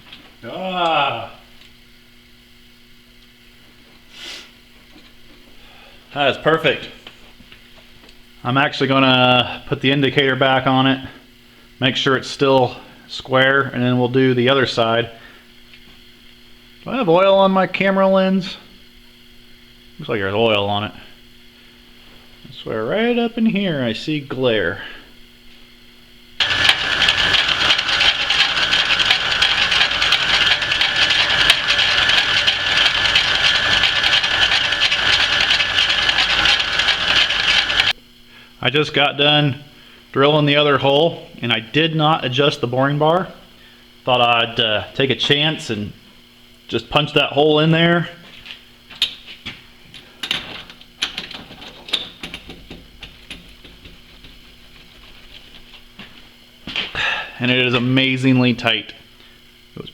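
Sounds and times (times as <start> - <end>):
metalworking machine whirring: 26.4 - 37.9.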